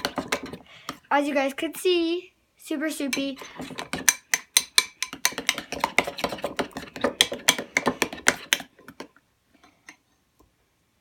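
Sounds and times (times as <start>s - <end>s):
utensil stirring slime in bowl: 0.0s - 1.1s, 3.0s - 9.2s
utensil clinking against bowl: 3.1s - 8.6s.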